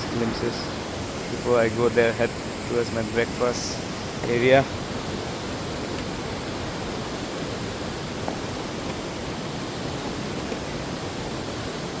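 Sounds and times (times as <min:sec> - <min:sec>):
stream rushing: 0:00.0 - 0:12.0.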